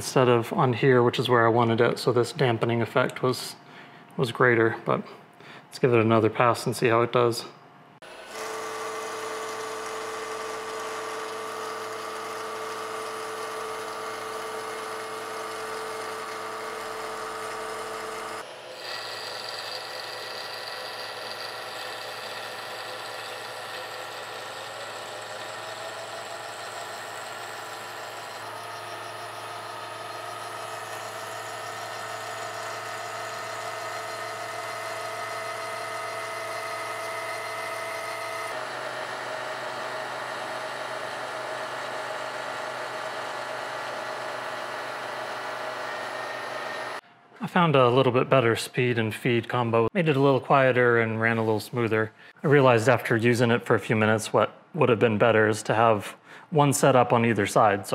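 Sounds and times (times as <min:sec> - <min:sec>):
milling machine cutting steel: 0:08.0 - 0:47.0.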